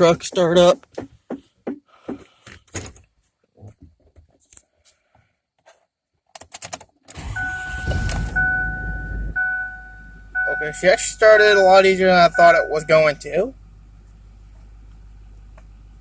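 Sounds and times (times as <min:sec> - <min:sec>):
diesel engine cranking and running: 0:07.1 - 0:16.0
two-tone dashboard chime: 0:07.2 - 0:13.4.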